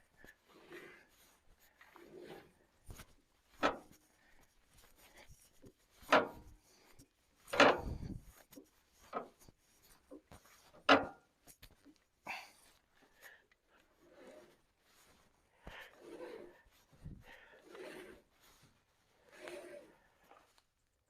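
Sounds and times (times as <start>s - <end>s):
knocks and clunks on sawmill: 3.6s - 4.0s, 6.0s - 6.5s, 7.5s - 8.1s, 10.8s - 11.2s.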